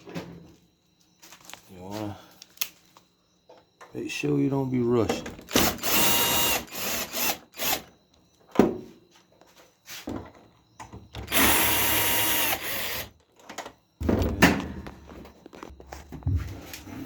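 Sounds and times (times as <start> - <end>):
power drill motor whine: 5.5 - 7.9, 11.2 - 13.1.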